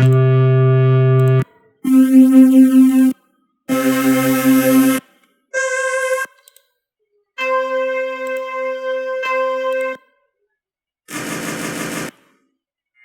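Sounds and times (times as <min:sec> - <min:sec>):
held synthesizer notes: 0:00.0 - 0:05.0.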